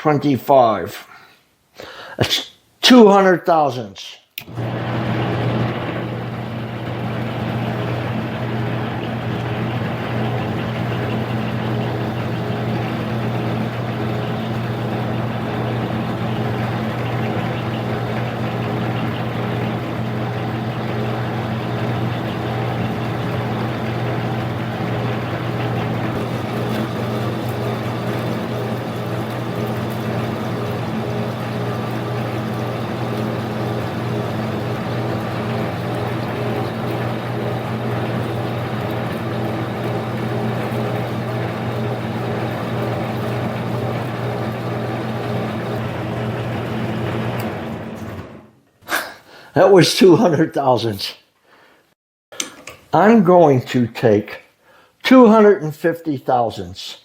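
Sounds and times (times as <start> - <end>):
lathe cutting workpiece: 4.4 - 48.5
lathe motor humming: 4.4 - 48.6.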